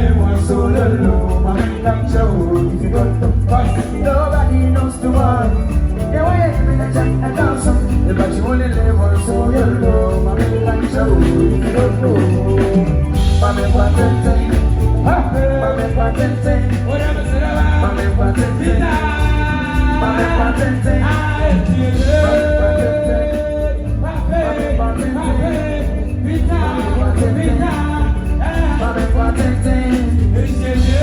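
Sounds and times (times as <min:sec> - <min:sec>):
heavy bass line: 0:00.0 - 0:31.0
live band playing upbeat song: 0:00.0 - 0:31.0
steady drum beat: 0:00.0 - 0:31.0.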